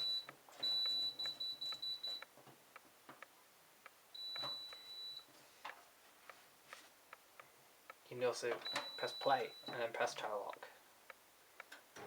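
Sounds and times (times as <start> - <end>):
dryer control panel beeps: 0.0 - 2.3, 4.2 - 5.3, 8.6 - 9.9.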